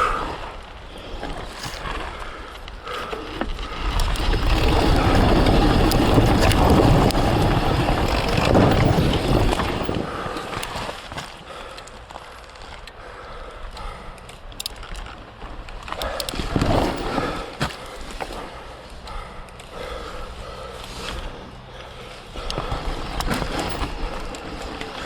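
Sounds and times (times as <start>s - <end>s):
tyre and chassis clatter: 0.1s - 25.0s
wind rushing on microphone: 3.9s - 10.7s.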